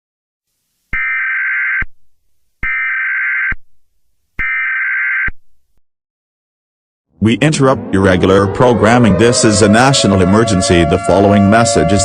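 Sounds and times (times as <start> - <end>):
buzzing digital screech bursts: 7.6 - 12.0.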